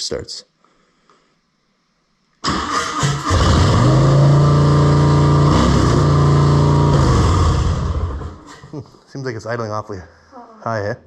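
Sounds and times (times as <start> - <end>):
electric starter cranking: 2.4 - 8.7
motorcycle engine idling high: 3.3 - 8.4.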